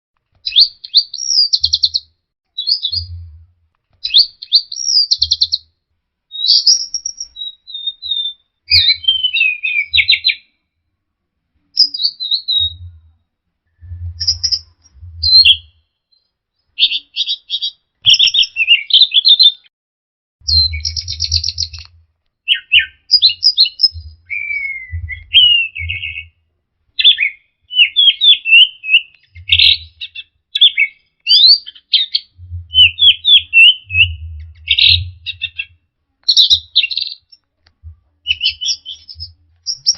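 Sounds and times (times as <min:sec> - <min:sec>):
low rumble: 0:03.0 - 0:03.6, 0:12.7 - 0:15.7, 0:23.9 - 0:26.1, 0:32.4 - 0:33.0, 0:33.9 - 0:35.2.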